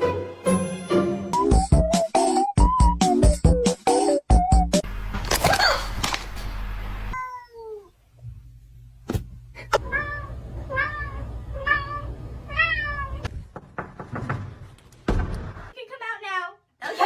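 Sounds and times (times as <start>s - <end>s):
cat meowing: 7.2s - 7.9s, 9.8s - 13.3s
sharp knocks: 13.3s - 15.6s.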